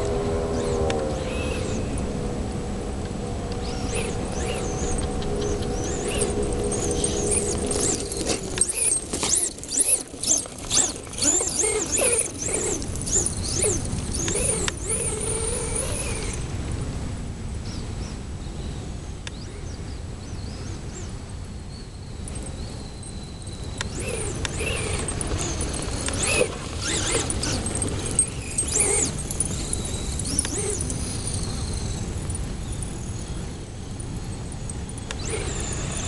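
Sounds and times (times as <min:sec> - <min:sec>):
electric motor whining: 0:00.0 - 0:02.1, 0:03.3 - 0:16.5, 0:23.6 - 0:33.3, 0:35.0 - 0:36.0.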